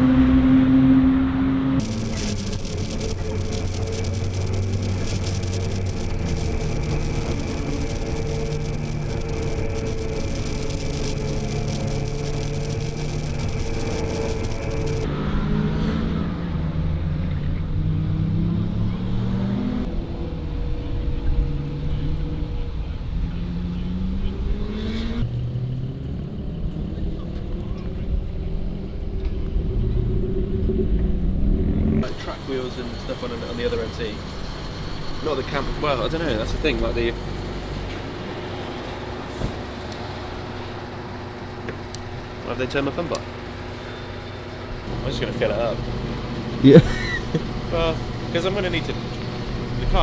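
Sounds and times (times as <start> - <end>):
car engine running: 0.8 - 15.1, 31.5 - 50.0.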